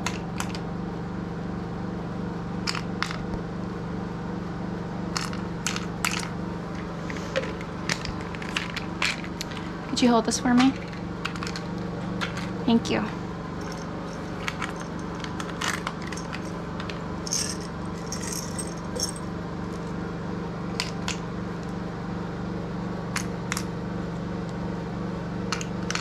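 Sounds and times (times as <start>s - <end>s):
low hum: 0.0s - 26.0s
pills rattling and clicking: 5.2s - 6.3s, 7.1s - 9.7s, 10.6s - 12.5s, 13.6s - 19.2s.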